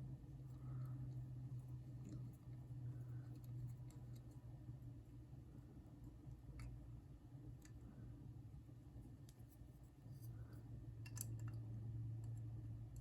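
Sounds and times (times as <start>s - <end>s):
low steady hum: 0.0s - 13.0s
small metal clicks: 11.0s - 11.6s.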